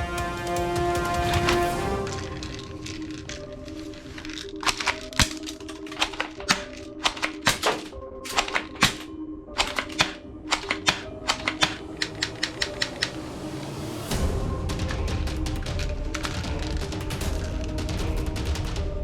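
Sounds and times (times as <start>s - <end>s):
background music: 0.0s - 19.0s
toy guns clicking: 2.1s - 13.2s.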